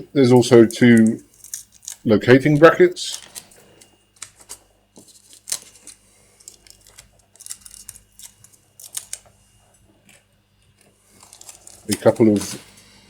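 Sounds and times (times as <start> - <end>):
plastic parts clicking on table: 0.9 - 2.0, 5.3 - 9.3.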